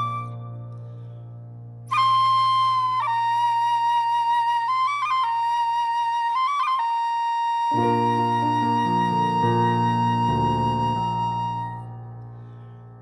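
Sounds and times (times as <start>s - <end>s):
bamboo flute high note: 0.0s - 0.5s, 1.9s - 12.0s
musical accompaniment: 7.7s - 12.2s.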